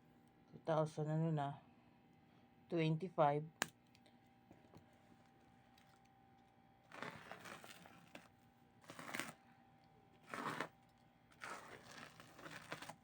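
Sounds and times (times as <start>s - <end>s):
packaging crinkling and rustling: 6.8s - 9.4s, 10.2s - 13.0s.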